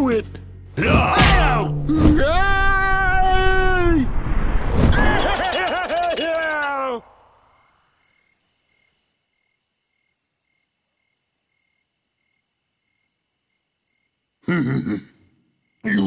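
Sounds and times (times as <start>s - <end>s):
faint crickets chirping: 0.0s - 0.8s, 2.5s - 16.0s
short loud sound: 0.9s - 7.4s.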